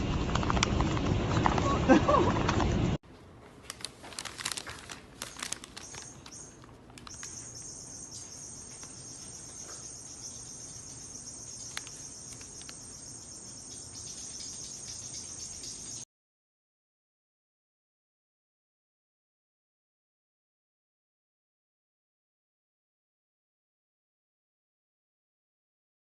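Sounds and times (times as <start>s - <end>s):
insects chirring: 5.2s - 16.0s.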